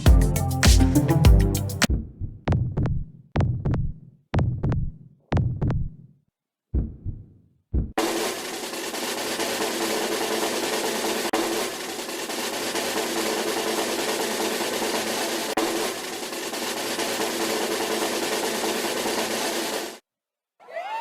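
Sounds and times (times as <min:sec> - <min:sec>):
heartbeat-like thumps: 0:06.7 - 0:08.0.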